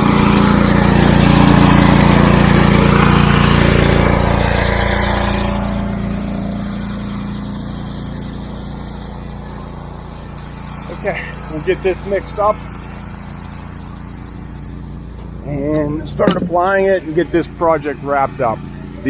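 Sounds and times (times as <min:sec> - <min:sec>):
small engine running: 0:00.0 - 0:19.0.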